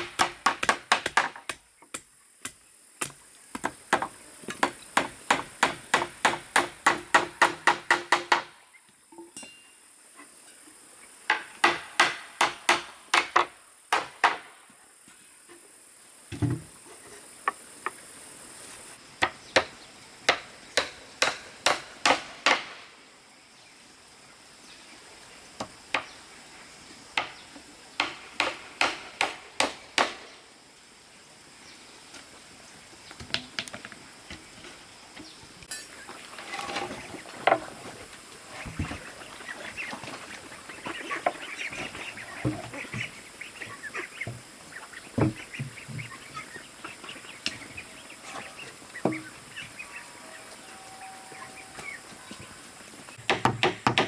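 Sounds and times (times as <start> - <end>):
hammer driving nails into wood: 0.0 - 1.6.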